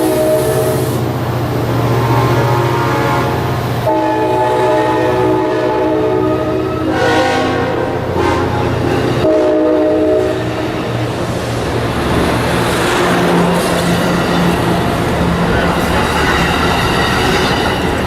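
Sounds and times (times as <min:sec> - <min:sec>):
locomotive air horn blasts: 0:00.0 - 0:01.0, 0:01.9 - 0:10.5
diesel locomotive engine rumble: 0:00.0 - 0:18.0
passing train running noise: 0:00.0 - 0:18.0.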